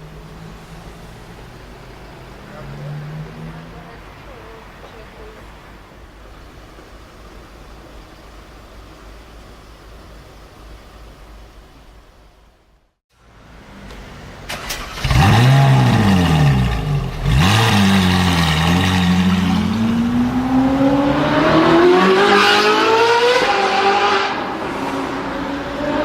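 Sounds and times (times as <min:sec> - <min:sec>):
sports car engine revving: 0:14.9 - 0:26.0.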